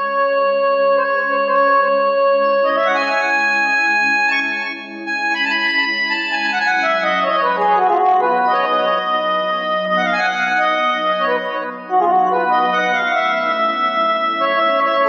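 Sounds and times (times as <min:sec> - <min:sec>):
electronic keyboard oboe melody: 0:00.0 - 0:15.0.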